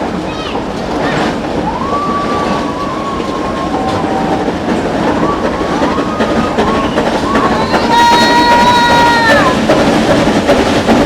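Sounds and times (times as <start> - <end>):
train carriages rumbling and rattling: 0.0 - 11.0
wheel squeal: 5.1 - 11.0.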